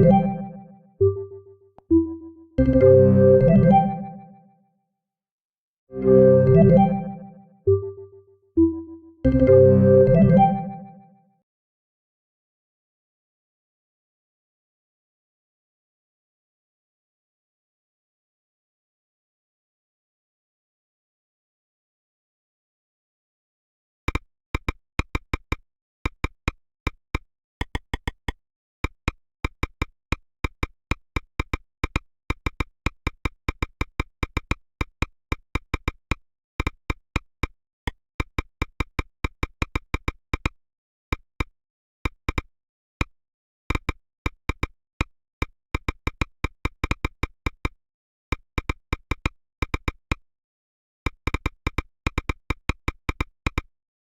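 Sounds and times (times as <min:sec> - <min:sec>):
phone ringtone: 0:00.0 - 0:04.3, 0:06.0 - 0:11.0.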